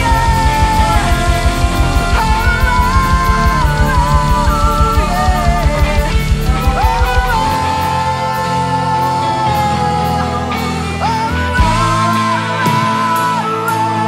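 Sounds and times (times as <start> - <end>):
fast drum beat: 0.0 - 8.2, 11.6 - 13.0
melodic lead guitar line: 0.0 - 14.0
rock band playing: 0.0 - 14.0.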